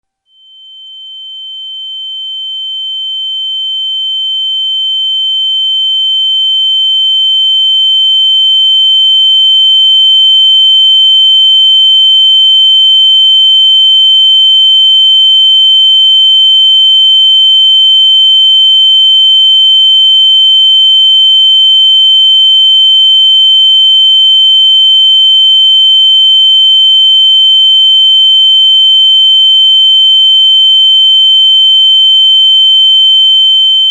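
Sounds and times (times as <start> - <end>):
faint lower tone: 0.3 - 10.3
high-pitched ringing tone: 0.3 - 33.9.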